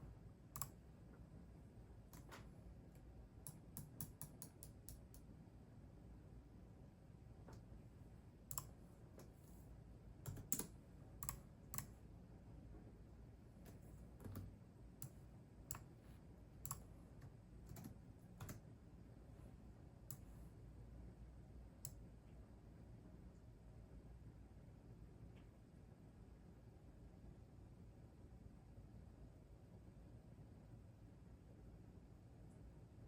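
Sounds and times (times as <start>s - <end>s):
keyboard keys clicking: 10.2s - 11.9s, 16.7s - 18.6s.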